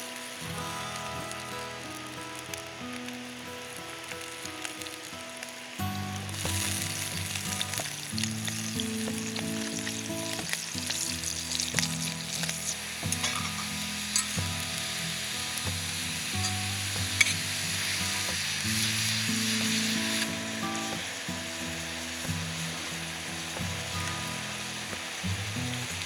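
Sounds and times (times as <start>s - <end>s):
sizzling and crackling: 0.0s - 26.0s.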